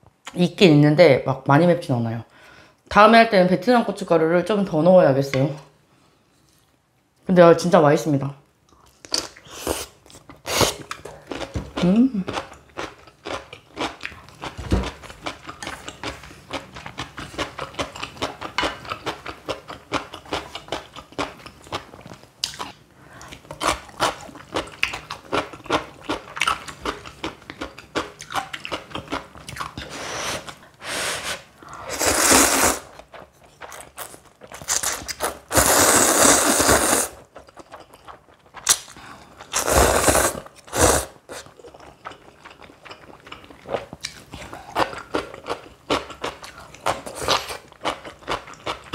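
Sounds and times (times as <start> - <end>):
crunching and chewing: 10.0 - 30.6, 37.2 - 39.7, 41.3 - 48.9
loud slurps: 29.8 - 32.9, 34.7 - 37.2, 39.6 - 41.4.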